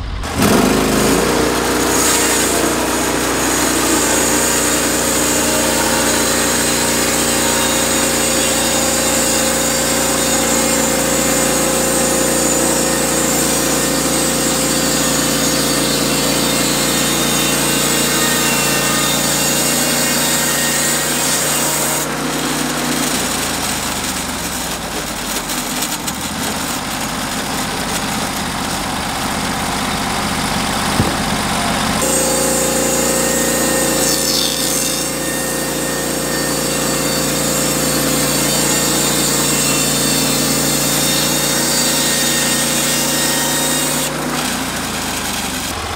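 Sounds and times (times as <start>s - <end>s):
sawmill engine running: 0.0s - 45.9s.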